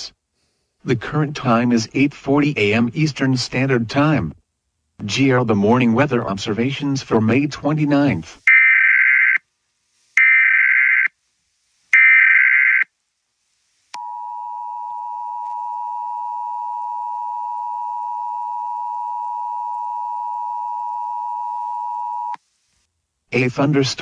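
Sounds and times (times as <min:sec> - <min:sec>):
steady warning alarm tone: 0:10.2 - 0:11.1, 0:12.0 - 0:12.8, 0:14.0 - 0:22.4.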